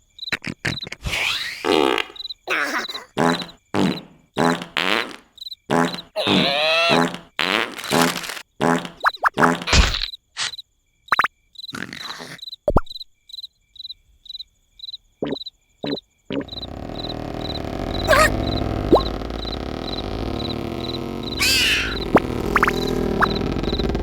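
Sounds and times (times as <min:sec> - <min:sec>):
crickets chirping: 0:00.0 - 0:01.0, 0:01.7 - 0:04.6, 0:05.3 - 0:06.1, 0:10.0 - 0:24.0
comic character noises: 0:06.0 - 0:10.0, 0:15.2 - 0:24.0
low thumps: 0:16.4 - 0:24.0.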